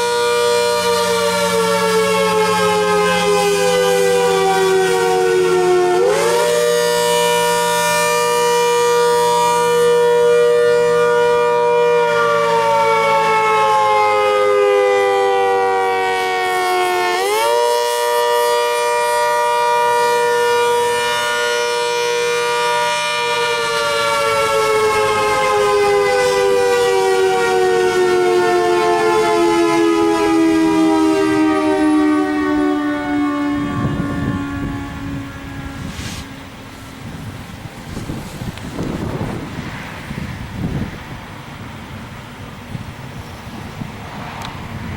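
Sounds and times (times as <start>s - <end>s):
warning siren wailing: 0.0s - 41.8s.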